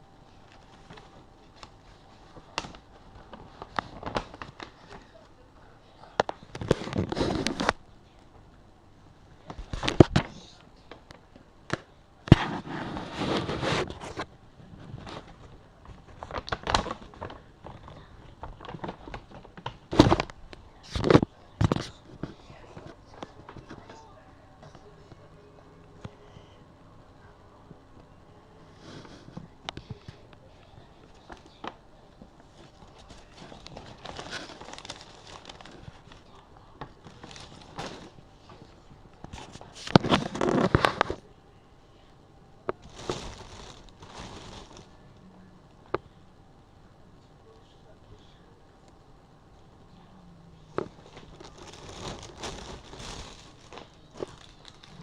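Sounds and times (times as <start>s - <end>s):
packaging rustling and crinkling: 0.3s - 5.1s, 6.2s - 7.8s, 12.3s - 22.4s, 32.4s - 41.2s, 42.7s - 45.0s, 50.8s - 55.0s
package being unwrapped: 32.6s - 36.4s, 37.0s - 38.2s, 39.4s - 41.2s, 42.7s - 45.0s, 50.8s - 55.0s.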